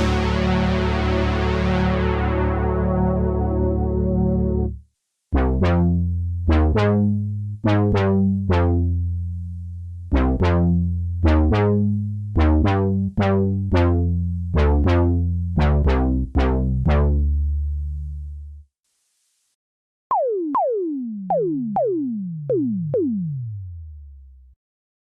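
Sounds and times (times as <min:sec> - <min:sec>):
held synthesizer chord: 0:00.0 - 0:04.8
synthesizer bass pattern: 0:00.0 - 0:04.8, 0:05.4 - 0:09.1, 0:10.1 - 0:17.4, 0:20.1 - 0:24.6.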